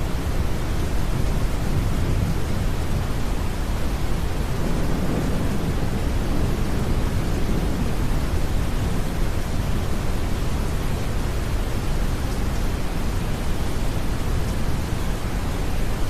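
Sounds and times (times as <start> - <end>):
rain: 0.0 - 16.0
deep brown noise: 2.3 - 11.8.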